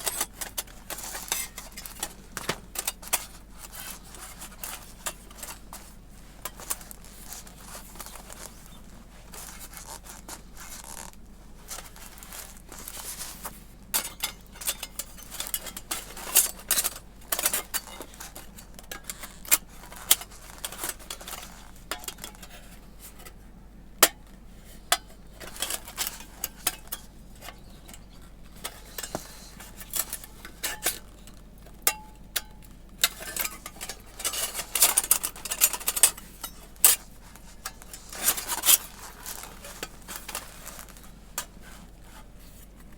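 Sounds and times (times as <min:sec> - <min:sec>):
thin metal plates clinking: 0:12.2 - 0:23.4, 0:24.8 - 0:41.7.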